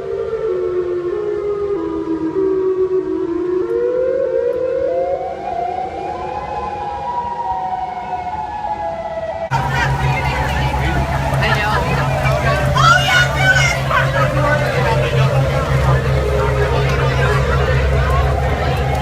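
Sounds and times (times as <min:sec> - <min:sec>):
tornado warning siren: 0:00.0 - 0:19.0.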